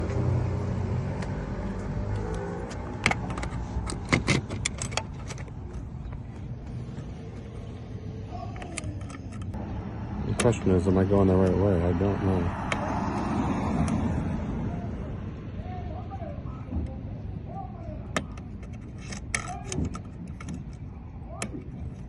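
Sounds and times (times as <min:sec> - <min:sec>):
metallic clicks and rattles: 0:02.9 - 0:06.2.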